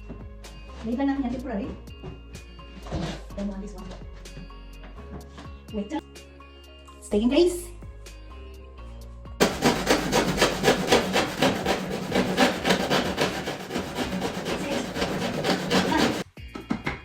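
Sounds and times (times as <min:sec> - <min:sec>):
hand saw cutting floor board: 0:09.4 - 0:16.3.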